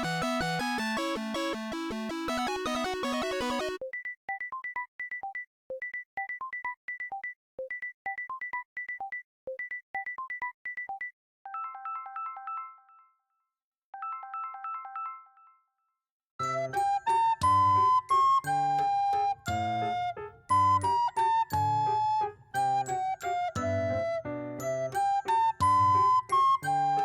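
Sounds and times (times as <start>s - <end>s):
loud full ringtone tune: 0.0s - 3.9s.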